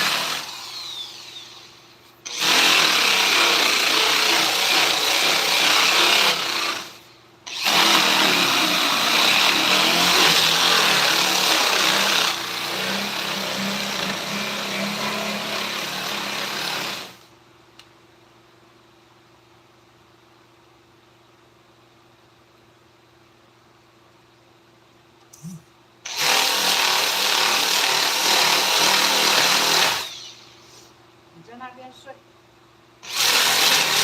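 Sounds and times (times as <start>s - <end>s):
power tool cutting wood: 0.0s - 17.2s, 26.1s - 30.6s, 33.0s - 34.0s.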